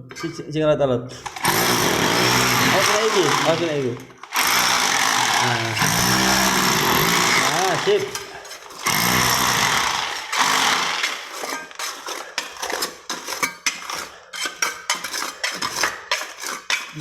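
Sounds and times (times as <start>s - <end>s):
power tool running into floor: 1.3s - 11.5s
metal tools clinking on concrete: 7.6s - 17.0s.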